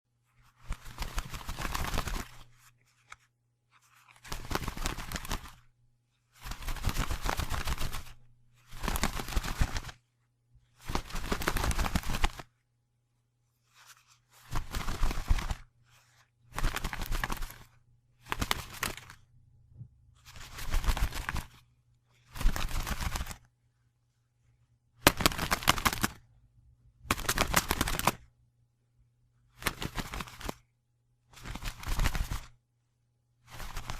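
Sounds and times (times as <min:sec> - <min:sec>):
wings flapping: 0:00.6 - 0:02.4, 0:04.2 - 0:05.6, 0:06.4 - 0:10.0, 0:10.8 - 0:12.5, 0:14.4 - 0:15.7, 0:16.5 - 0:19.2, 0:20.3 - 0:21.6, 0:22.3 - 0:23.5, 0:25.0 - 0:26.2, 0:27.1 - 0:28.2, 0:29.6 - 0:30.6, 0:31.4 - 0:32.5, 0:33.5 - 0:33.9.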